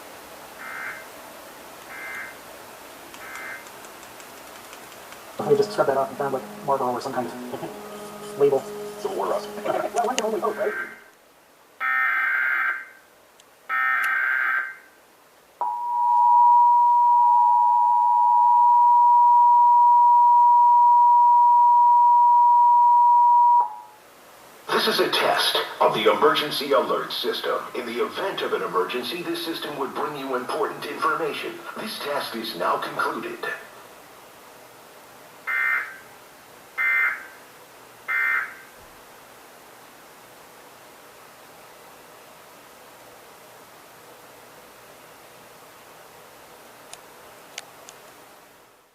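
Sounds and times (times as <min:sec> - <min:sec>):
two-tone attention signal: 0:15.6 - 0:23.9.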